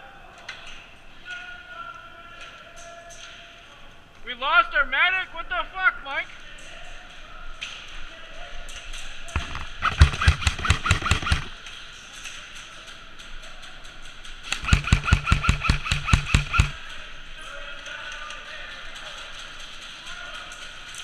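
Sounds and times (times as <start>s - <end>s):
airsoft gun firing bursts: 9.4s - 11.6s, 14.5s - 16.9s.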